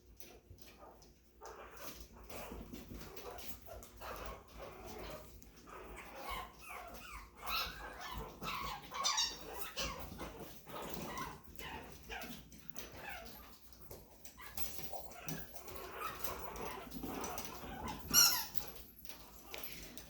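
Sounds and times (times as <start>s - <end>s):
puppies whimpering and yipping: 0.2s - 20.0s
puppy high squeal: 5.9s - 12.3s, 17.8s - 18.8s.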